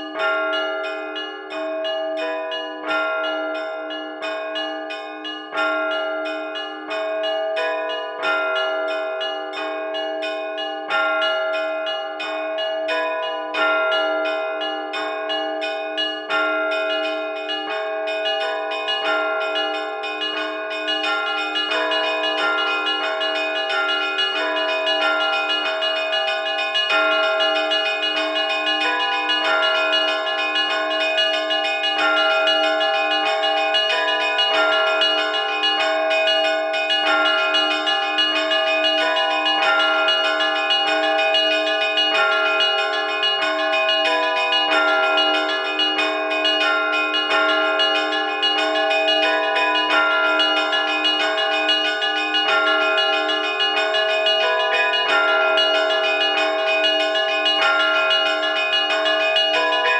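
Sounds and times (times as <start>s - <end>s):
church bells pealing: 0.0s - 59.9s.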